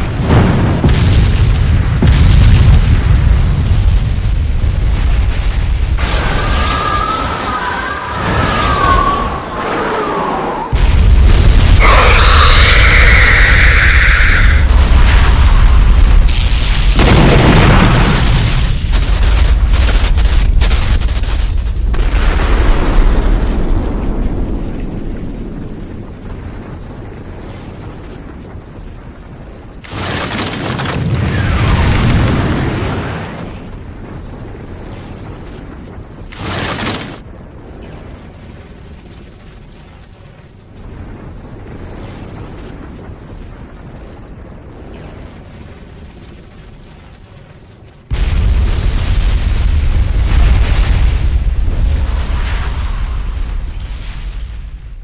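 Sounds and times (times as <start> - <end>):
explosion boom: 0.0 - 7.4, 10.7 - 20.9, 48.1 - 55.0
low rumble: 0.0 - 29.8
loud blast: 10.7 - 19.4.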